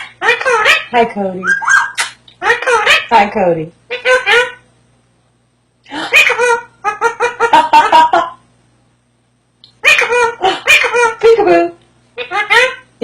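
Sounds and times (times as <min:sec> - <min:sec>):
parrot chattering: 0:00.0 - 0:03.2, 0:03.9 - 0:04.6, 0:06.1 - 0:07.6, 0:09.7 - 0:11.4, 0:12.2 - 0:12.9.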